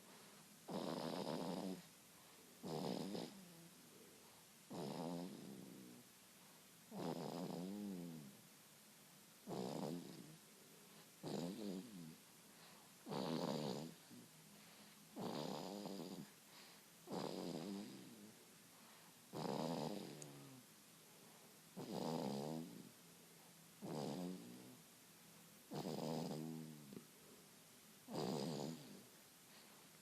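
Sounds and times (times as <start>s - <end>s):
baby snoring: 0.7s - 1.9s, 2.6s - 3.6s, 4.7s - 6.1s, 6.9s - 8.3s, 9.4s - 12.2s, 13.0s - 18.3s, 19.3s - 20.6s, 21.8s - 22.9s, 23.8s - 24.8s, 25.7s - 27.0s, 28.1s - 29.1s.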